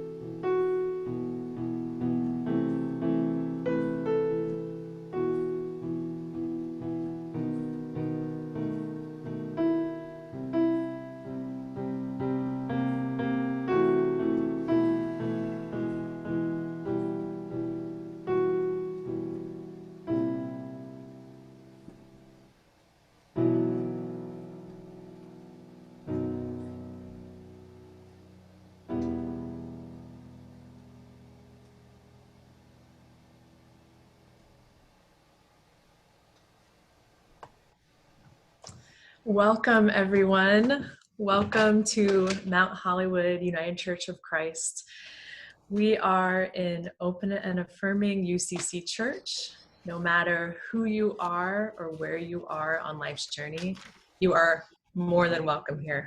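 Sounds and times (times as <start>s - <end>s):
slow solo piano piece: 0.0s - 22.5s, 23.4s - 32.5s.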